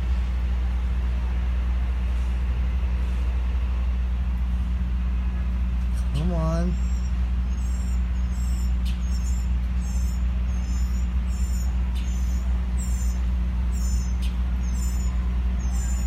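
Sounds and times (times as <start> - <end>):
low engine hum: 0.0 - 16.0
small bird chirping: 6.2 - 16.0.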